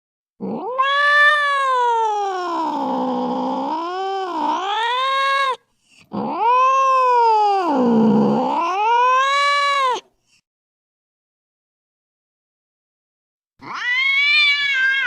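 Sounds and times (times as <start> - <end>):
cat yowling: 0.4 - 10.1, 13.6 - 15.0.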